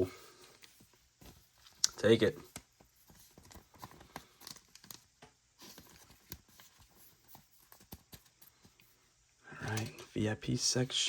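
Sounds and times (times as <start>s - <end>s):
trading cards shuffled by hand: 0.6s - 8.8s.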